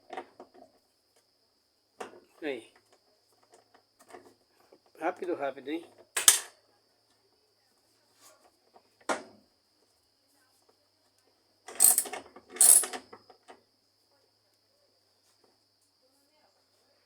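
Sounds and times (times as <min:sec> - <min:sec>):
metal tools clicking: 0:11.7 - 0:13.0.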